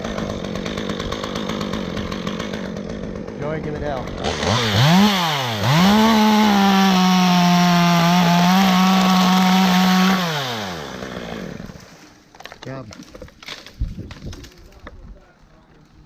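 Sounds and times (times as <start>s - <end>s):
two-stroke chainsaw revving: 0.0s - 11.9s.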